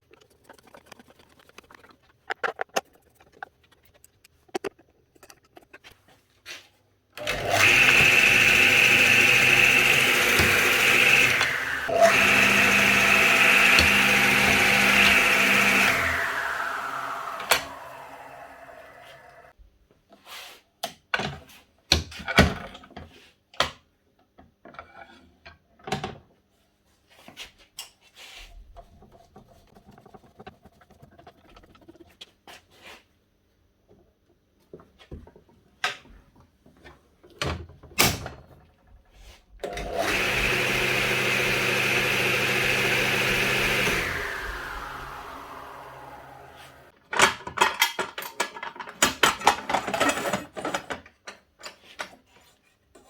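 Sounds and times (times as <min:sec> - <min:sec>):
saw motor running: 0:07.2 - 0:19.5, 0:39.8 - 0:46.9.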